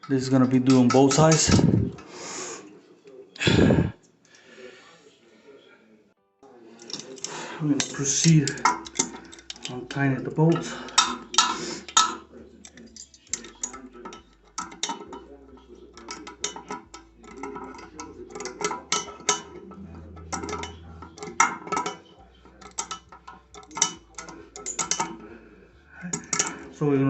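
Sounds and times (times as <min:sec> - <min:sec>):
small metallic clicks and clinks: 0:06.8 - 0:25.3, 0:26.1 - 0:26.7.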